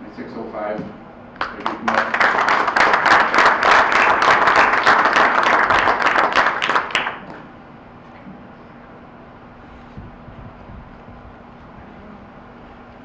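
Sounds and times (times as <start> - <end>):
low room noise: 0.0 - 13.0
audience applauding: 1.4 - 7.4.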